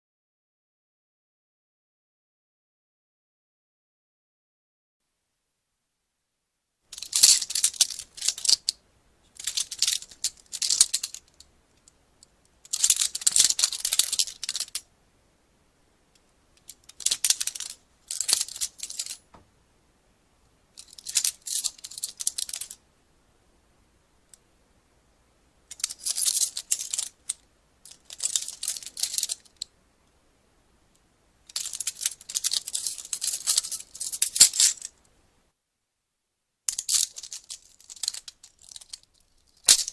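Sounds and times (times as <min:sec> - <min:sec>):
metal handcuffs ratcheting: 0:07.0 - 0:08.7, 0:09.4 - 0:11.4, 0:12.7 - 0:14.8, 0:16.6 - 0:19.2, 0:20.8 - 0:22.8, 0:25.7 - 0:29.6, 0:31.5 - 0:34.9, 0:36.7 - 0:39.9.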